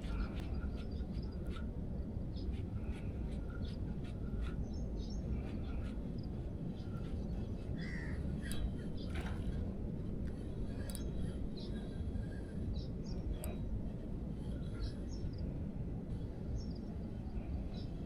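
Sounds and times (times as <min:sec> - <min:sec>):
low outdoor background rush: 0:00.0 - 0:18.0
birds calling: 0:02.3 - 0:09.6
crow cawing: 0:07.8 - 0:08.2.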